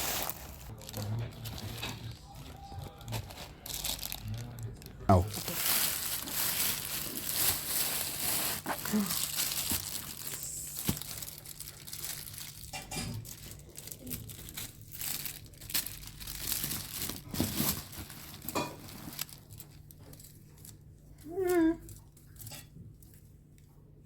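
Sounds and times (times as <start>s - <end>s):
crinkling and rustling: 0.0s - 23.8s.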